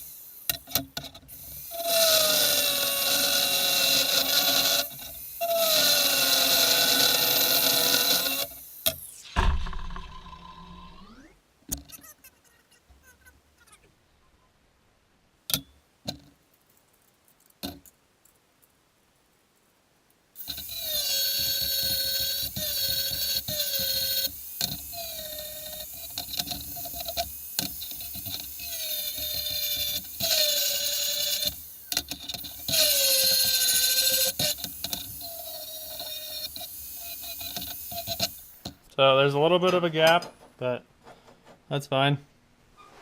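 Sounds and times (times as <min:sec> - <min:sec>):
angle grinder cutting steel: 0:01.6 - 0:11.2, 0:20.4 - 0:38.7.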